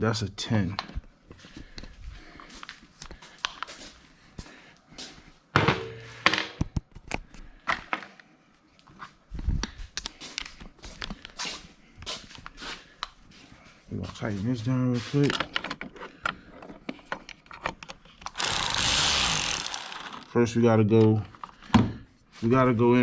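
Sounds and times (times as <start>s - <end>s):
hand tools clinking on battery clamp: 18.2s - 20.3s.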